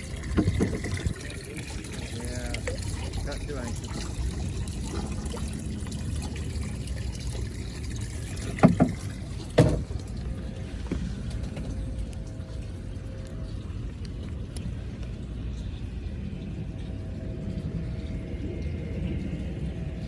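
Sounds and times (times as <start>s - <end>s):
boat engine rumble: 0.0s - 20.0s
water lapping: 0.0s - 20.0s.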